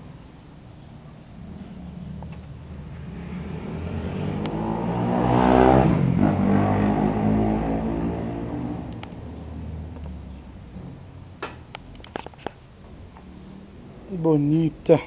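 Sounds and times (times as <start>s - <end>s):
vehicle engine passing by: 1.4s - 11.2s, 13.0s - 14.3s.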